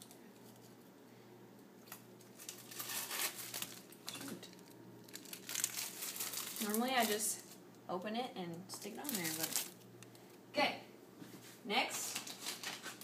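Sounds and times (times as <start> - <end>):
plastic package crinkling and tearing: 1.9 - 7.6, 8.7 - 10.2, 12.0 - 13.0.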